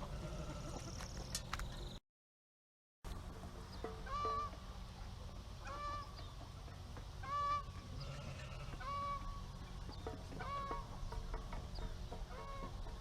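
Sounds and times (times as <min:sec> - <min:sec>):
fowl calling: 0:04.0 - 0:04.6, 0:05.6 - 0:06.2, 0:07.2 - 0:09.4, 0:10.3 - 0:11.2, 0:12.2 - 0:13.0.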